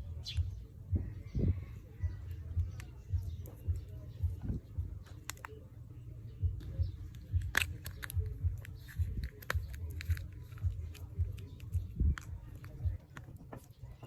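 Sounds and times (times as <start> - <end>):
calm hip-hop music: 0.0 - 14.0
packaging crinkling: 7.2 - 13.4.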